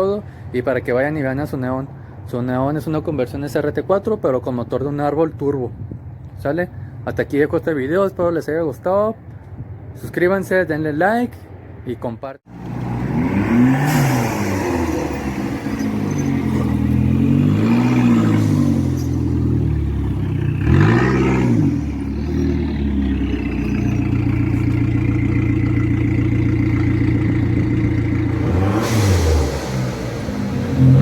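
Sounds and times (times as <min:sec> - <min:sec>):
car engine revving: 0:12.5 - 0:31.0.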